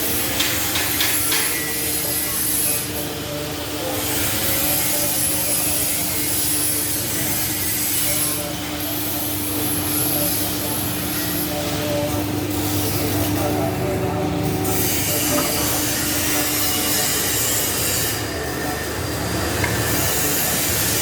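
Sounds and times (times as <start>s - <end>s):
electric pump motor hum: 0.0s - 21.0s.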